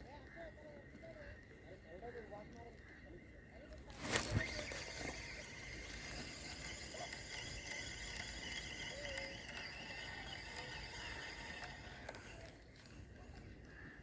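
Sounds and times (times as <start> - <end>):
insects trilling: 3.9 - 12.6.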